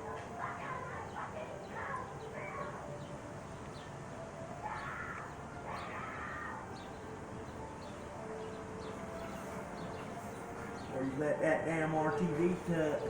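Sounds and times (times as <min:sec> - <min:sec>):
steady background hum: 0:00.0 - 0:13.0
harsh animal calls: 0:04.5 - 0:07.1.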